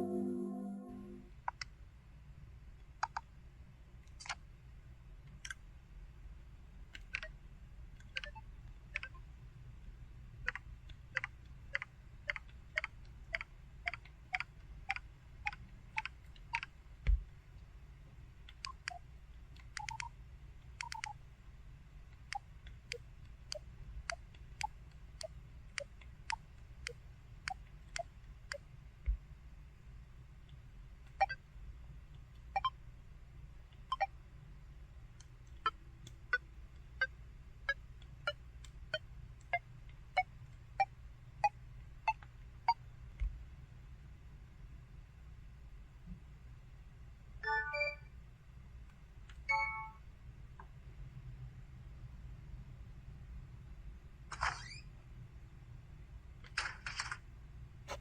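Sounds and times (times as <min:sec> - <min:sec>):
phone keypad clicks: 0:19.6 - 0:20.1, 0:20.8 - 0:21.2.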